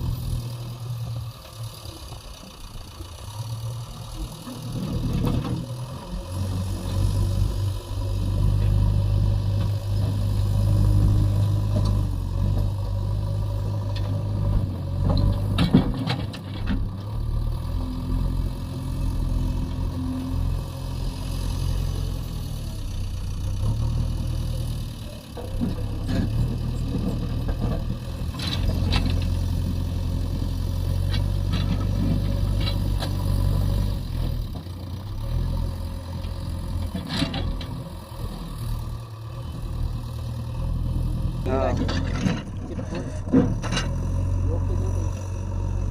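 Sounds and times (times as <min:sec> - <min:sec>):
diesel engine running: 0:00.0 - 0:45.9
clanks and scrapes: 0:41.7 - 0:44.1.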